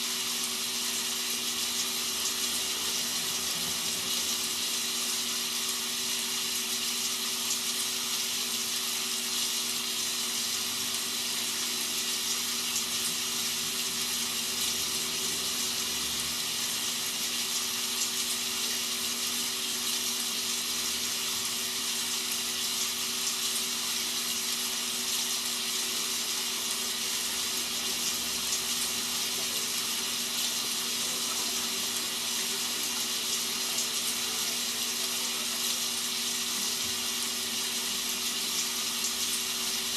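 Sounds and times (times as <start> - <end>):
rainfall hiss: 0.0 - 5.8, 10.5 - 20.0, 24.1 - 39.9.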